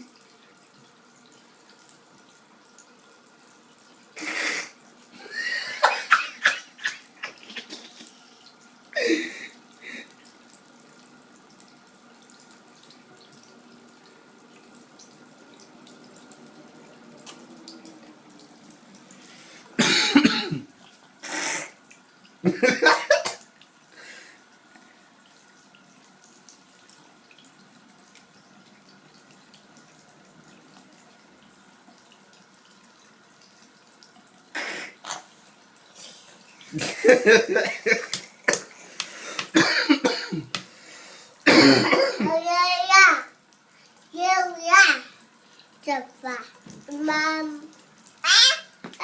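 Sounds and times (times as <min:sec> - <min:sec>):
running water from tap: 0:00.0 - 0:49.0
person clearing throat: 0:19.8 - 0:20.7, 0:22.5 - 0:23.4, 0:39.5 - 0:40.5, 0:41.5 - 0:42.3.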